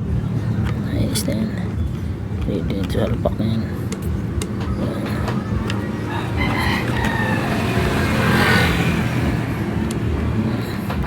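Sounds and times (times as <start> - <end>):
vehicle engine humming: 0.0 - 11.0
rooster crowing: 6.0 - 8.9.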